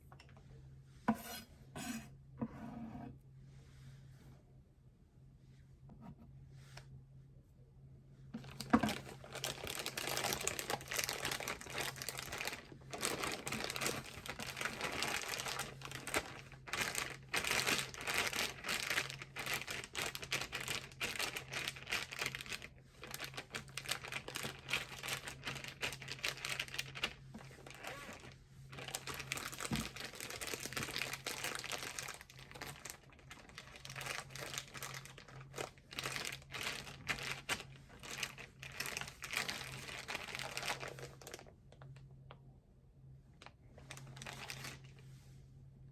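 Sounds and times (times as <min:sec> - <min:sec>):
low steady hum: 0:00.0 - 0:45.9
plastic bag crinkling: 0:08.4 - 0:42.1, 0:43.8 - 0:45.0.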